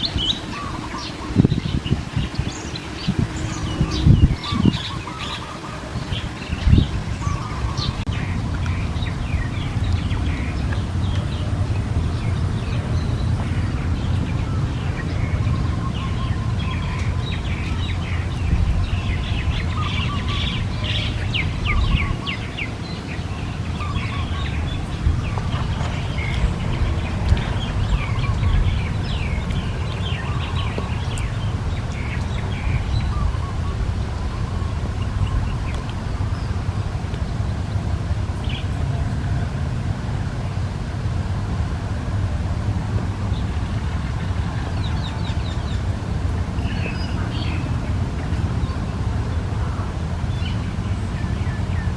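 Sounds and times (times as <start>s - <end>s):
small birds chirping: 0.0s - 38.8s
steady low rumble: 0.0s - 51.9s.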